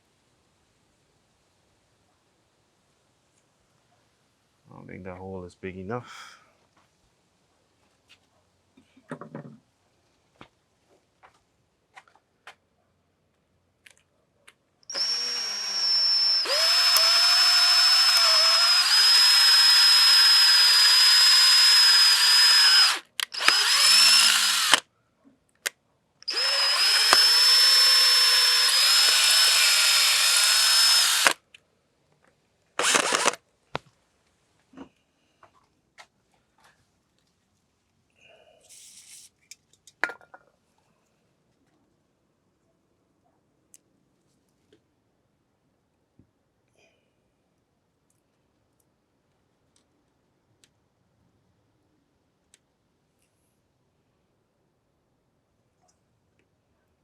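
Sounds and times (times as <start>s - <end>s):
power drill whining: 14.9s - 24.8s, 26.2s - 31.4s, 32.8s - 33.4s.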